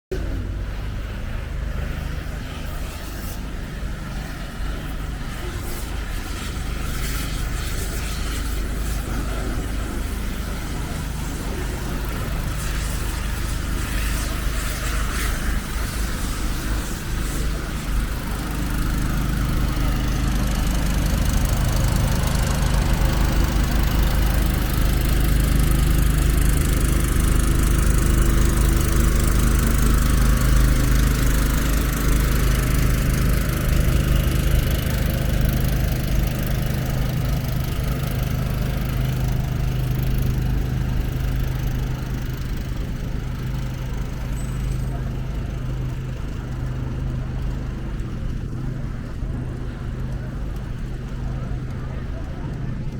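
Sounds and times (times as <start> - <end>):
vehicle engine running: 0.1 - 52.9.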